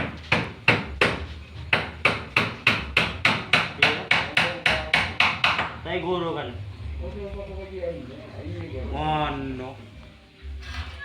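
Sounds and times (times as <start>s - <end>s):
hand hammering: 0.0s - 5.8s.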